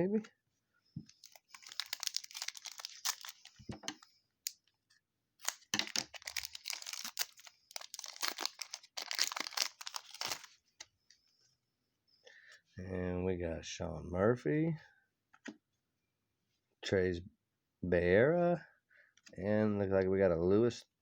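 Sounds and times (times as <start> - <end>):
wrapper tearing and crinkling: 1.2 - 3.6, 5.4 - 10.5.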